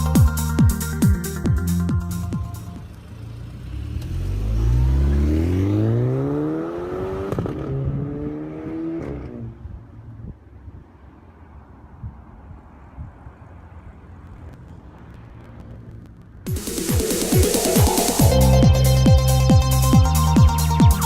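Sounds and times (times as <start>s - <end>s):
car engine accelerating hard: 2.8s - 9.5s.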